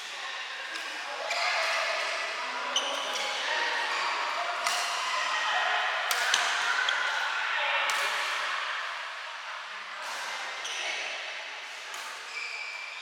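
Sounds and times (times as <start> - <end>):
brief squeak: 12.3 - 13.0.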